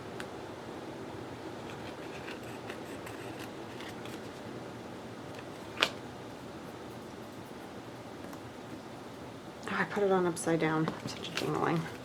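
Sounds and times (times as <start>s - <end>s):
paper rustling: 1.7s - 4.5s.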